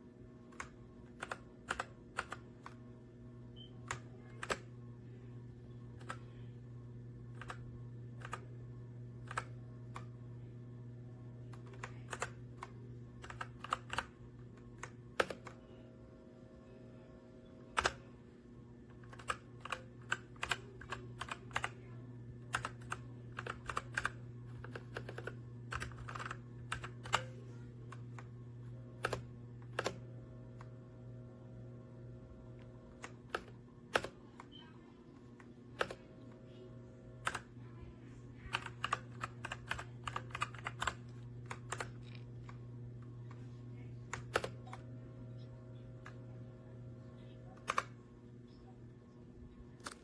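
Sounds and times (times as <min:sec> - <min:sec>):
steady low hum: 0:00.0 - 0:50.0
mechanical keyboard typing: 0:00.5 - 0:02.8, 0:03.6 - 0:04.7, 0:06.0 - 0:06.4, 0:07.3 - 0:08.5, 0:09.2 - 0:10.1, 0:11.4 - 0:15.6, 0:17.7 - 0:18.1, 0:18.9 - 0:27.3, 0:29.0 - 0:30.0, 0:32.9 - 0:34.7, 0:35.7 - 0:36.2, 0:37.2 - 0:37.6, 0:38.5 - 0:42.6, 0:44.1 - 0:44.8, 0:47.5 - 0:48.0, 0:49.8 - 0:50.0.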